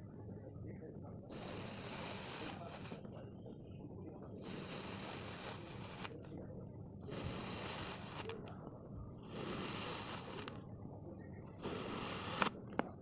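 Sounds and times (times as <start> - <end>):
comb scraping through sand: 1.3 - 3.1, 4.4 - 6.2, 7.1 - 8.4, 9.3 - 10.6, 11.6 - 12.6.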